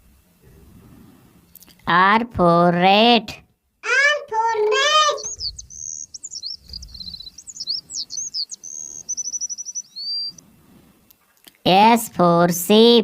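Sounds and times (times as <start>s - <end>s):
songbird singing: 3.9s - 10.4s.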